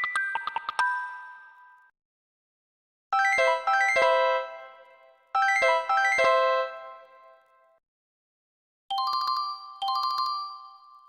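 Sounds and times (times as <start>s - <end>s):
synth ringtone melody: 0.0s - 1.2s.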